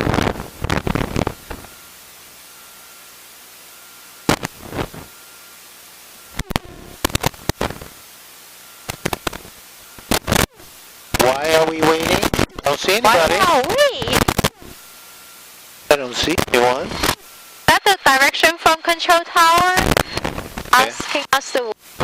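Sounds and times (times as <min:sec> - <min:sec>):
static crackles and pops: 0:00.0 - 0:02.5, 0:04.2 - 0:22.0
headset intercom hiss: 0:08.8 - 0:22.0.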